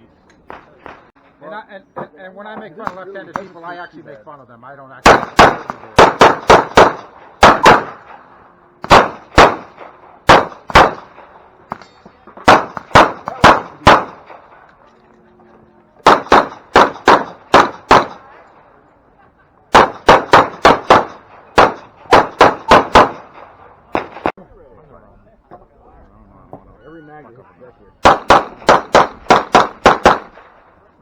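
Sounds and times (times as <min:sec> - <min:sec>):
pistol shots: 0:05.0 - 0:14.7, 0:16.0 - 0:18.5, 0:19.7 - 0:24.3, 0:28.0 - 0:30.7.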